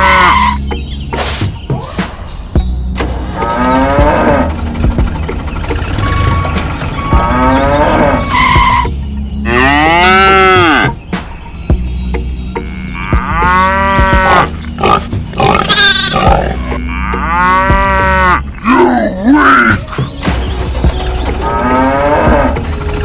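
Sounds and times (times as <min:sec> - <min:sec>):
cow mooing: 0:03.3 - 0:04.6, 0:06.0 - 0:08.8, 0:09.5 - 0:11.0, 0:12.6 - 0:20.0, 0:21.4 - 0:22.6.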